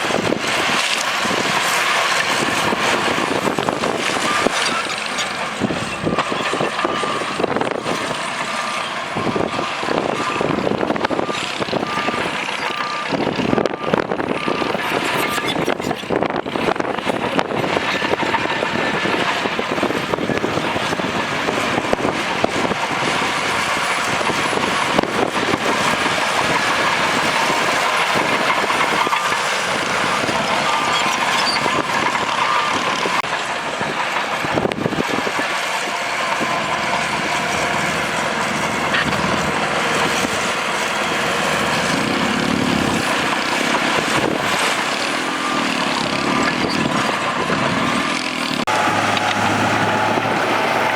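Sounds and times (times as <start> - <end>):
bulldozer diesel engine running: 0.0 - 50.9
steel tracks clattering: 14.1 - 50.9.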